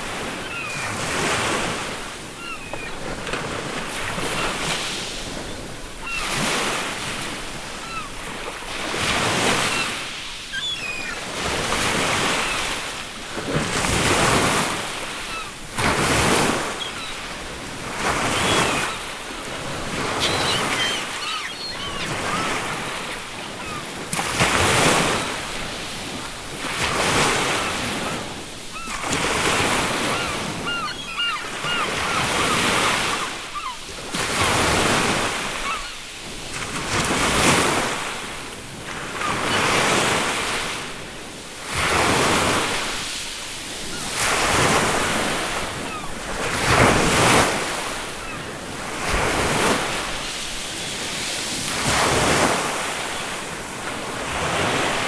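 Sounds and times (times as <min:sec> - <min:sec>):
ocean surf breaking: 0:00.0 - 0:55.0
seagulls calling: 0:00.2 - 0:03.2, 0:05.4 - 0:08.4, 0:09.1 - 0:12.9, 0:15.0 - 0:24.0, 0:27.1 - 0:33.9, 0:34.8 - 0:36.0, 0:43.8 - 0:46.3, 0:47.0 - 0:50.0.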